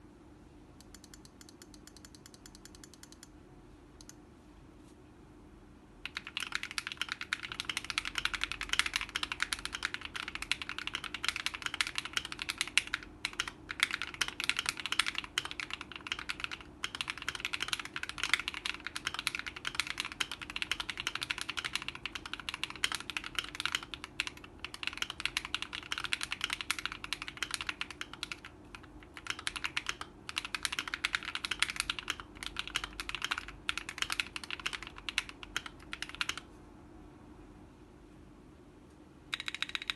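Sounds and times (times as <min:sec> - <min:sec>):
fast typing on mechanical keyboard: 0:06.0 - 0:36.5, 0:39.3 - 0:39.9.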